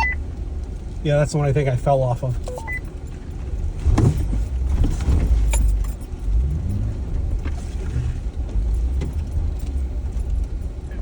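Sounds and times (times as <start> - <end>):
vehicle rumbling: 0.0 - 11.0.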